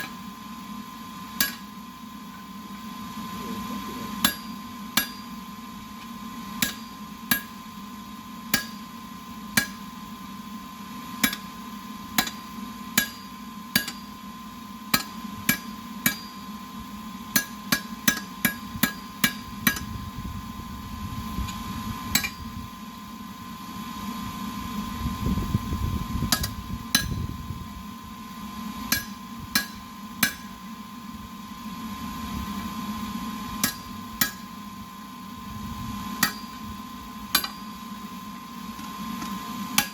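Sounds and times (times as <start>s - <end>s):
steady hum: 0.0s - 39.9s
hammer striking metal on anvil: 1.4s - 1.8s, 4.2s - 5.4s, 6.6s - 7.7s, 8.5s - 9.9s, 11.2s - 14.2s, 14.9s - 16.5s, 17.3s - 19.9s, 22.1s - 22.5s, 26.3s - 27.3s, 28.9s - 30.7s, 33.6s - 34.6s, 36.2s - 36.6s, 37.3s - 37.8s.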